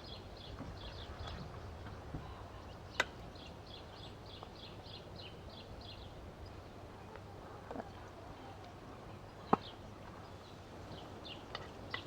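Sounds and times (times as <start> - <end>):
songbird chirping: 0.0 - 12.0.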